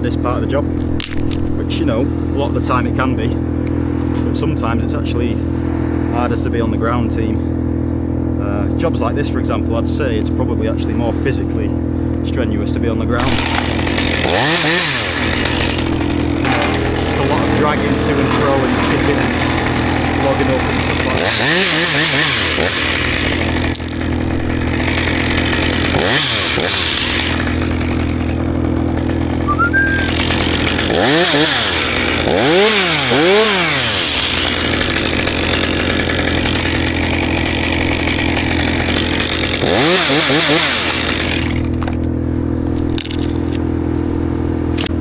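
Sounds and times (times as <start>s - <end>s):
chainsaw revving: 13.2s - 42.1s.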